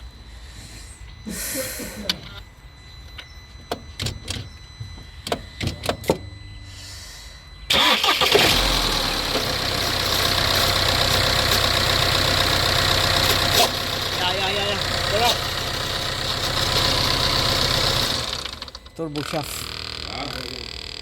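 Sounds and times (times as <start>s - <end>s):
car engine starting and running: 7.7s - 21.0s.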